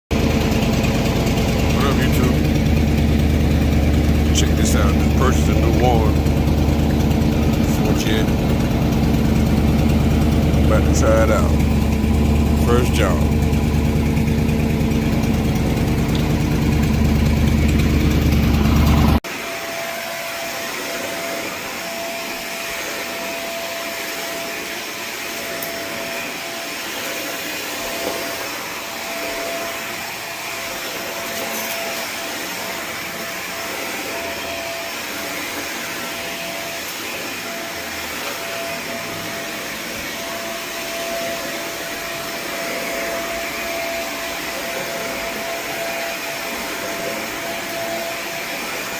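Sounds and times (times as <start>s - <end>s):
low engine drone: 0.1s - 19.2s.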